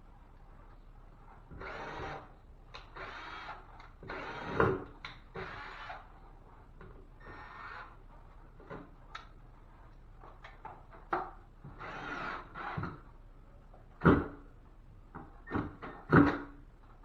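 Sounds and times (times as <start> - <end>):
drywall knocks and bumps: 14.0 - 14.5.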